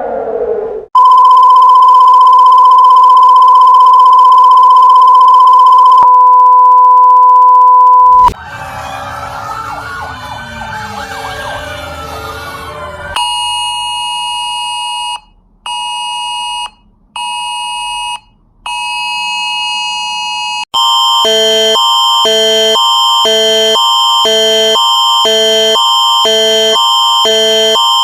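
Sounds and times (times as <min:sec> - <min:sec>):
two-pitch alert tone: 0:08.0 - 0:14.0
electronic alert tone blasts: 0:08.1 - 0:14.5, 0:20.8 - 0:28.0
emergency sirens wailing: 0:08.2 - 0:13.5, 0:21.2 - 0:28.0.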